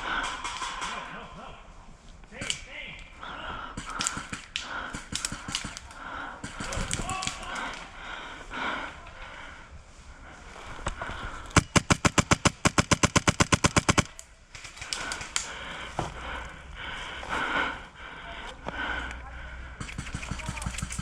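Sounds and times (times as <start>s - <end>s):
airsoft gun rapid firing: 3.8s - 7.5s, 11.6s - 15.5s, 19.8s - 21.0s.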